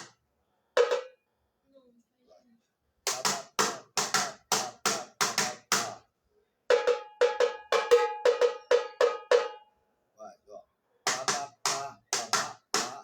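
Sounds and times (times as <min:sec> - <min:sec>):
tamborim struck with stick: 0:06.7 - 0:09.7, 0:11.1 - 0:13.0.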